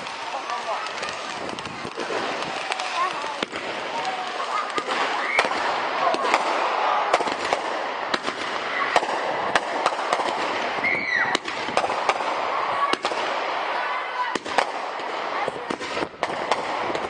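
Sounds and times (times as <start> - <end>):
firework bangs and crackles: 0.0 - 17.0
rumble of firework bursts: 0.0 - 17.0
falling firework whistle: 4.4 - 5.6, 10.8 - 11.6.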